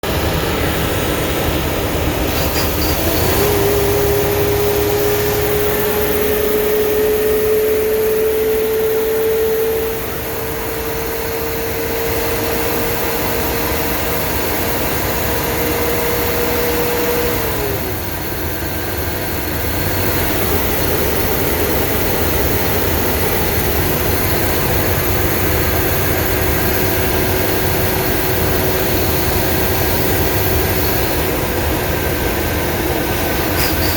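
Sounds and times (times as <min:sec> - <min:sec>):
bus engine and road noise: 0:00.0 - 0:33.9.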